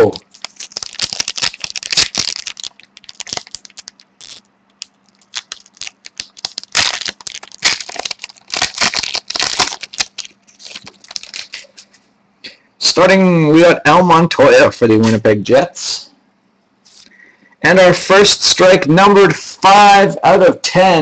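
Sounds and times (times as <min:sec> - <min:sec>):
card wrapper tearing and crinkling: 0:00.0 - 0:11.8.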